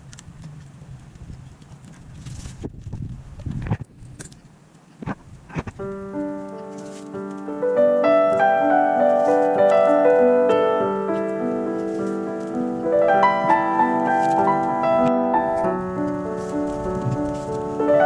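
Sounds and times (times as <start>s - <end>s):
piano music: 5.8s - 18.0s.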